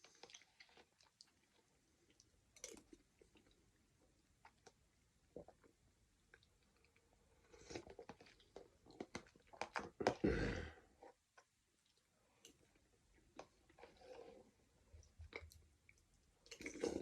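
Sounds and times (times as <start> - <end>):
person chewing and eating: 15.0 - 17.0.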